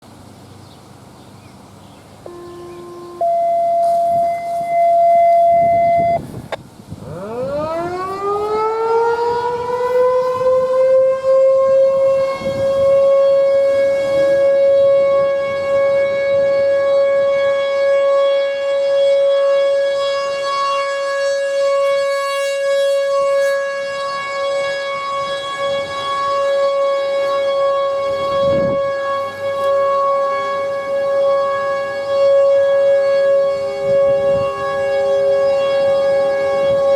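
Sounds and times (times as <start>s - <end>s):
steady tone: 2.3s - 6.4s
warning siren winding up and wailing: 2.3s - 36.9s.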